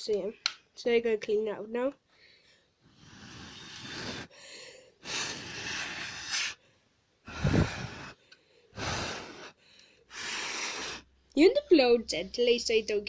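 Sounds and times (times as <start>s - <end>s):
person blowing puffs of breath: 2.2s - 11.2s.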